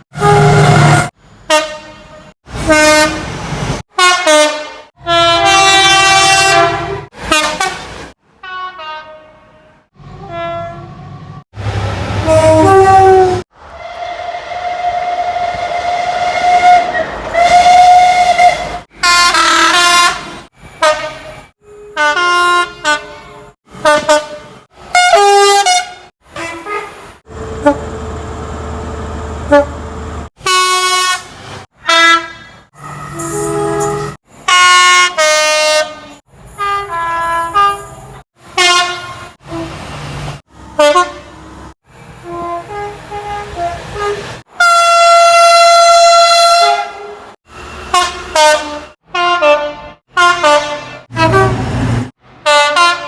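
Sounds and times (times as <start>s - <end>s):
two-note train horn blasts: 32.9s - 35.2s
long single-note horn blast: 47.9s - 53.0s.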